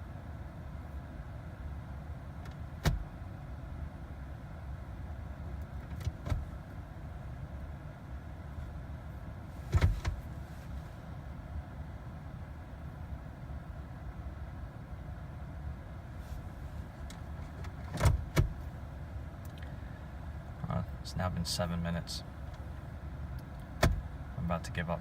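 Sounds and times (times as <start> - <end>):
clicks and knocks in car cabin: 2.4 - 3.1, 5.6 - 6.6, 9.6 - 10.3, 17.0 - 18.7, 23.4 - 24.1.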